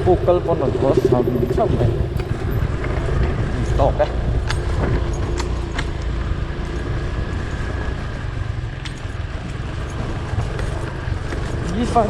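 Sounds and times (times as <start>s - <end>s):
faint steady whine: 0.0s - 3.3s
vehicle engine running: 0.0s - 12.0s.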